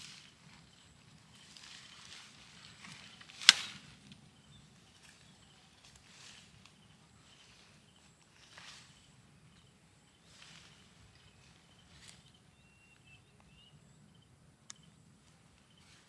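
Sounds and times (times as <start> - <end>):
soft rustling: 0.0 - 12.4.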